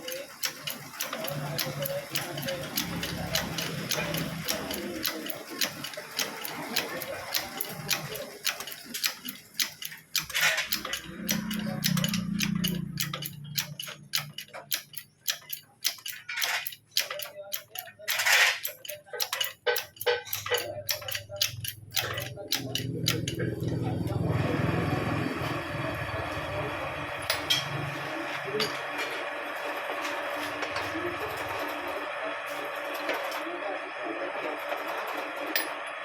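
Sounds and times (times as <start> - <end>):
hand tools clicking on metal: 0.0 - 24.2.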